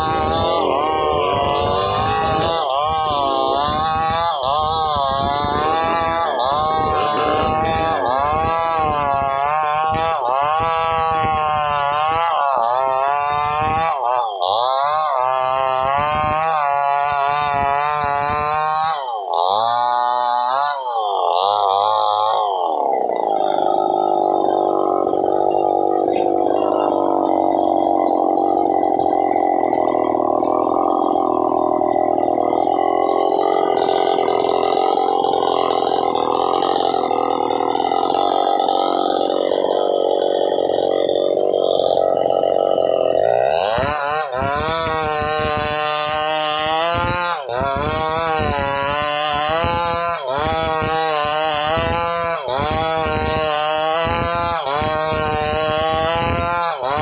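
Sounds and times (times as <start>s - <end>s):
chainsaw cutting log: 0.0s - 57.0s
steady engine drone: 0.0s - 57.0s.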